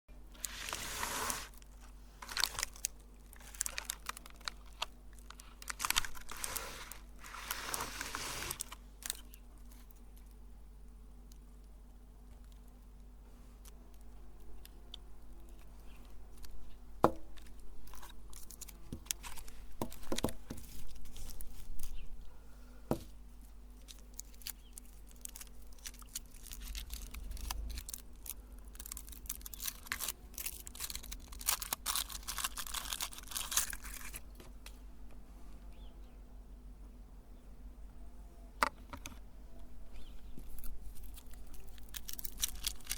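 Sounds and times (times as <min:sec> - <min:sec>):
candies crunching in a meat grinder: 0:00.3 - 0:10.4, 0:17.4 - 0:22.0, 0:23.7 - 0:34.4, 0:40.4 - 0:42.9.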